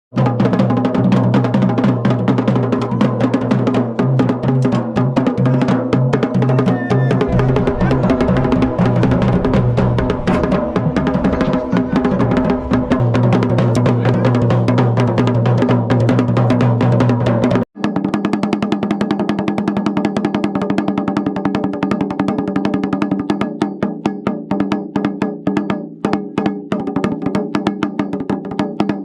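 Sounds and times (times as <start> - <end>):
drums in a fast dense rhythm: 0.1 - 29.0
deep low drum tone: 6.3 - 17.4.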